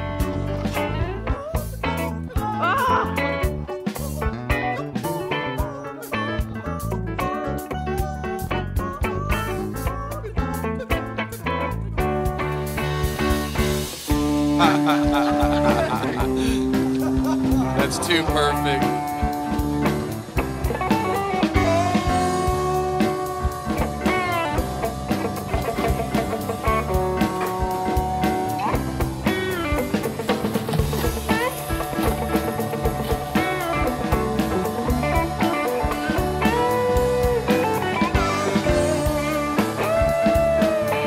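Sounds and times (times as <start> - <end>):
bluesy electric guitar: 0.0 - 41.0
drum beat: 12.0 - 41.0.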